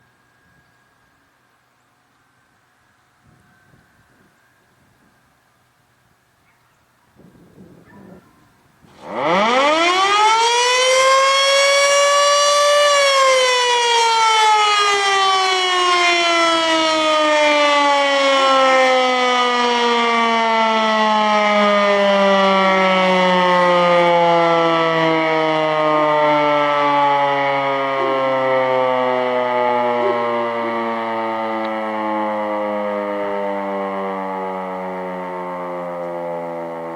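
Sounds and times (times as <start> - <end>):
fire siren winding up and down: 8.8 - 36.9.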